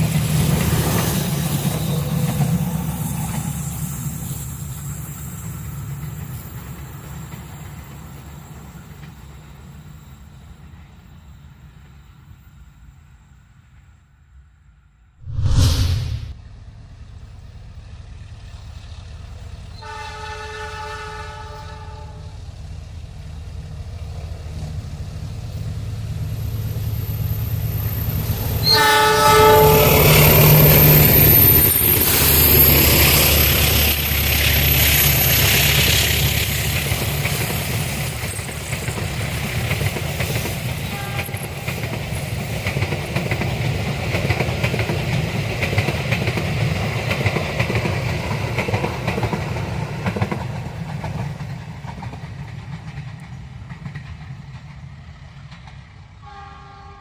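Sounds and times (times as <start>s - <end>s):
train carriages clickety-clack: 0.0s - 9.8s, 23.2s - 57.0s
train horn blasts: 19.8s - 22.4s, 28.6s - 30.5s, 40.9s - 41.5s, 56.2s - 57.0s.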